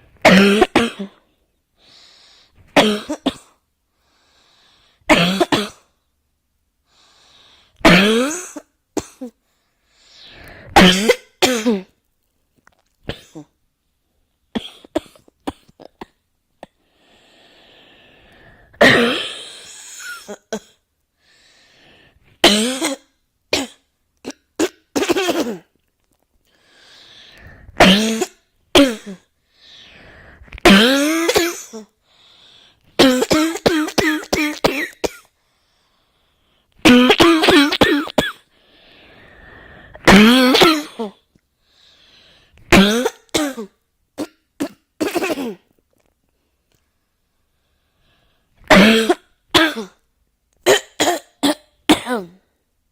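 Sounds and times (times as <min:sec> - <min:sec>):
person coughing: 0:00.3 - 0:01.2, 0:07.9 - 0:09.4, 0:10.7 - 0:12.0, 0:13.1 - 0:13.6, 0:18.8 - 0:20.8, 0:23.6 - 0:25.7, 0:30.6 - 0:31.9, 0:33.0 - 0:35.3, 0:36.9 - 0:38.5, 0:40.0 - 0:41.2, 0:42.7 - 0:45.7, 0:48.7 - 0:50.0, 0:50.7 - 0:52.4
person drawing breath: 0:01.8 - 0:02.7, 0:03.9 - 0:05.0, 0:06.9 - 0:07.8, 0:09.4 - 0:10.8, 0:16.8 - 0:18.8, 0:21.2 - 0:22.4, 0:26.5 - 0:27.8, 0:29.4 - 0:30.6, 0:32.0 - 0:32.9, 0:38.5 - 0:40.0, 0:41.6 - 0:42.6.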